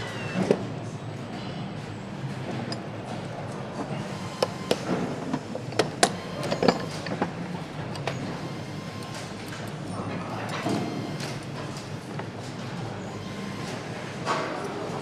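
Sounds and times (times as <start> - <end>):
factory hum: 0.0 - 15.0
metal tools clinking and knocking: 5.7 - 7.3.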